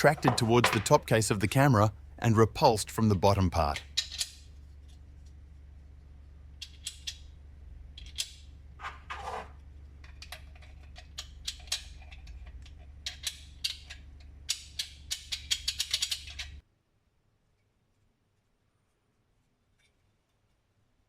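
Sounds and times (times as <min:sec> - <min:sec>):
plastic parts clicking: 0:07.9 - 0:08.4, 0:10.0 - 0:16.6.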